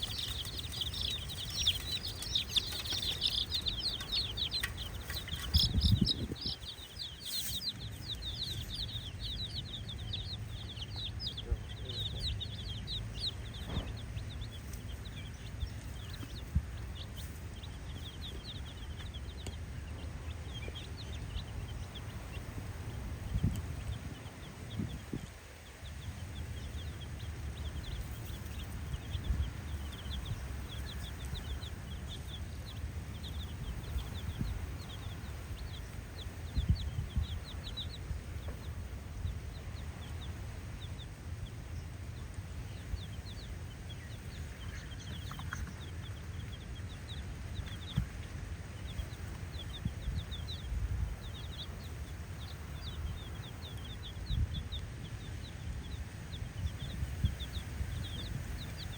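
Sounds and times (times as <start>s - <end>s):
low rumble: 0.0s - 25.3s
chicks peeping: 0.0s - 58.9s.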